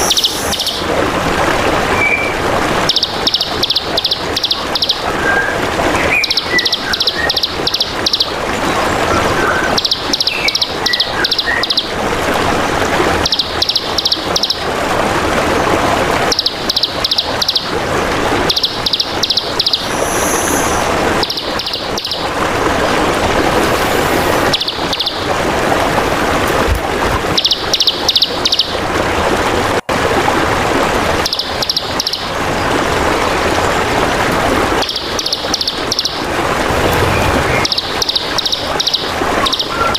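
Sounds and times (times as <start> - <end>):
trickle of running water: 0.0 - 39.9
songbird chirping: 34.8 - 39.9.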